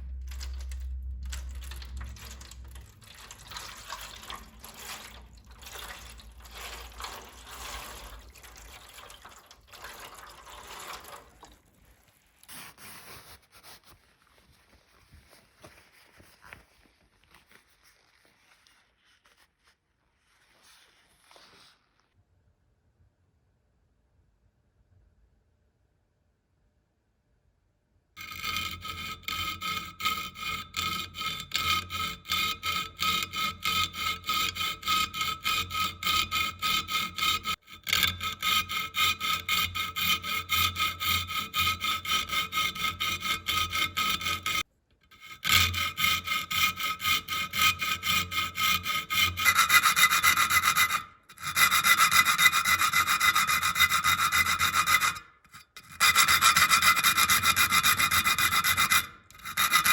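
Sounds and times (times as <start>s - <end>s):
file rubbing on saw blade: 1.3s - 8.8s, 28.2s - 59.9s.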